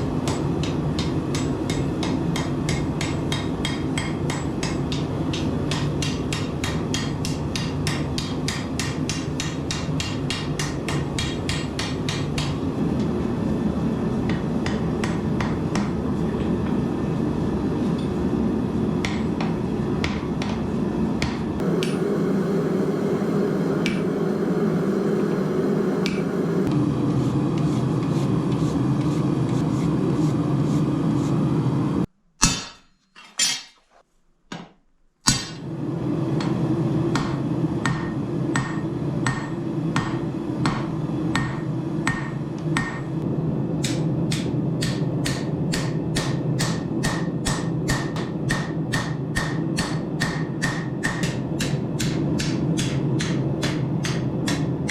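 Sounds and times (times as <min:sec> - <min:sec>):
hammer striking steel on anvil: 0:00.2 - 0:12.6, 0:32.4 - 0:33.7, 0:35.2 - 0:35.6, 0:37.1 - 0:43.1, 0:43.8 - 0:54.9
low rushing noise: 0:21.6 - 0:27.4.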